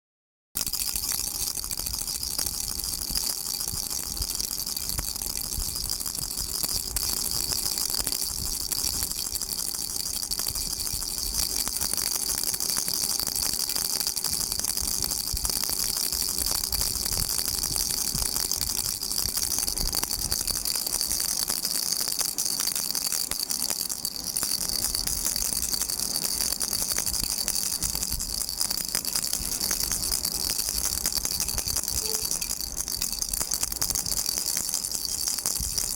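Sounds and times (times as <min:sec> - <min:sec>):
baby rattle shaking: 0:00.6 - 0:35.9.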